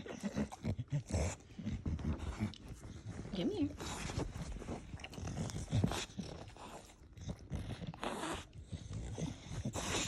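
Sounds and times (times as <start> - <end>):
dog grunting: 0.0 - 2.6
dog breathing noisily: 0.0 - 10.0.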